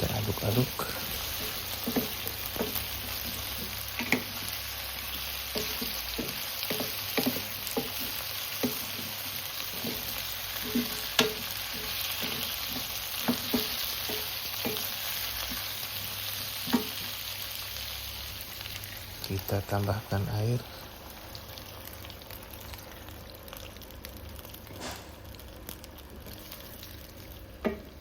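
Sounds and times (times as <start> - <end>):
food sizzling in oil: 0.0 - 28.0
utensil clacking against pan: 5.4 - 15.6, 27.6 - 27.9.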